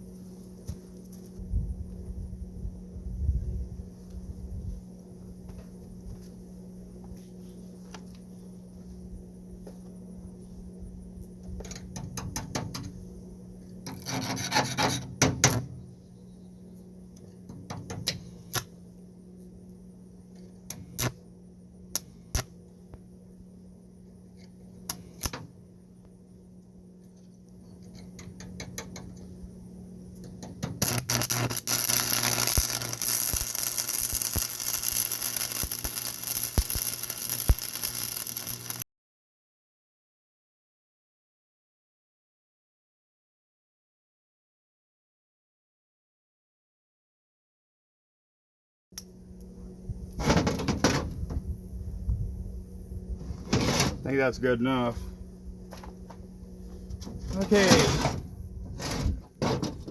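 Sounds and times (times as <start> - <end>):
steady low hum: 0.0 - 38.8, 49.0 - 59.9
electric welding arc crackle: 17.8 - 18.8, 20.7 - 21.2, 24.8 - 25.5, 30.6 - 38.8, 57.3 - 58.2
short scrapes: 53.2 - 54.1, 57.2 - 59.8.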